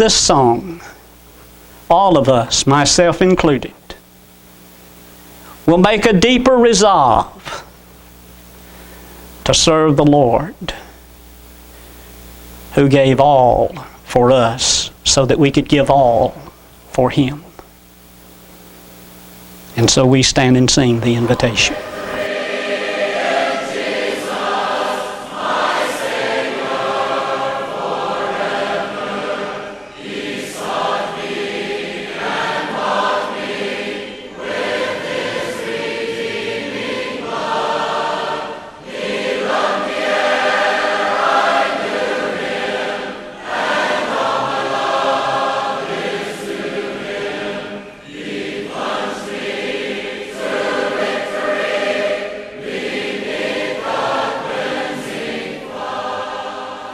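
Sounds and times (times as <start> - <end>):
congregation singing a hymn: 19.8 - 56.9.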